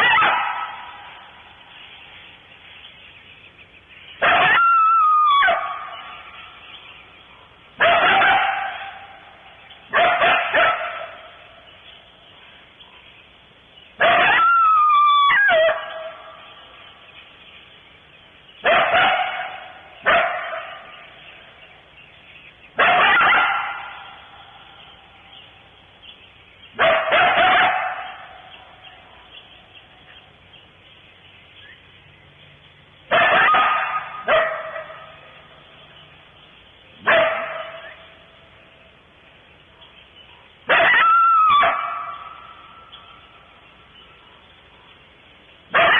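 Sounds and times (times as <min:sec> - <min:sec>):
coyote barking and howling: 0:00.0 - 0:01.7, 0:04.2 - 0:11.7, 0:14.0 - 0:17.0, 0:18.6 - 0:21.6, 0:22.7 - 0:25.5, 0:26.7 - 0:29.9, 0:33.1 - 0:35.8, 0:36.9 - 0:38.4, 0:40.4 - 0:44.4, 0:45.7 - 0:45.9
faint coyote calls: 0:04.2 - 0:06.4, 0:14.0 - 0:16.7, 0:40.7 - 0:43.2.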